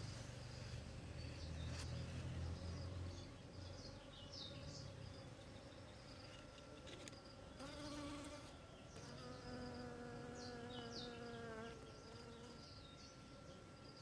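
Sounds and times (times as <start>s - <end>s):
honeybees buzzing: 0.0s - 14.0s.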